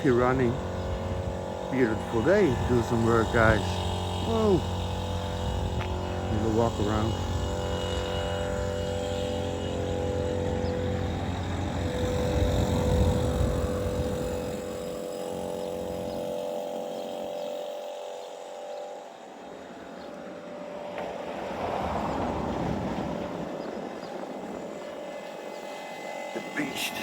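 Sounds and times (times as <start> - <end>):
air compressor humming: 0.0 - 27.0.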